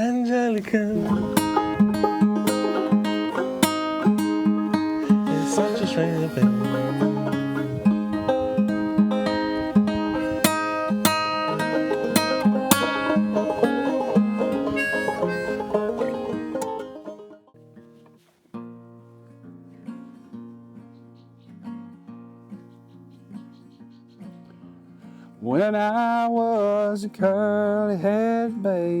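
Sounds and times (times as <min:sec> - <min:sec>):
acoustic guitar picking: 0:00.0 - 0:27.0
banjo picking bright notes: 0:00.8 - 0:17.8.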